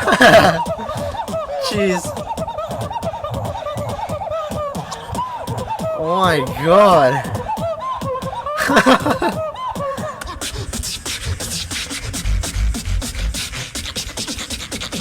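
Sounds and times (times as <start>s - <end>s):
beatboxing mouth percussion: 0.0s - 15.0s
gliding pitched vocal sounds: 10.2s - 14.4s
deep beatboxed bass notes: 10.3s - 15.0s.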